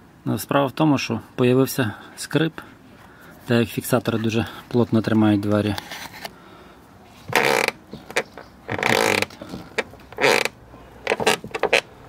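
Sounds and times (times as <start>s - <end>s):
car door check creaking: 7.3s - 11.9s.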